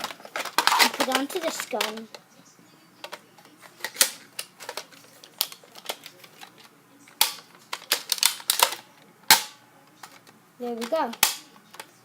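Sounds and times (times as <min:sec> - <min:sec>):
plastic clicks and rattles: 0:00.0 - 0:02.2, 0:03.0 - 0:11.9
loud plastic snap: 0:03.8 - 0:06.1, 0:07.2 - 0:10.3, 0:11.1 - 0:11.9.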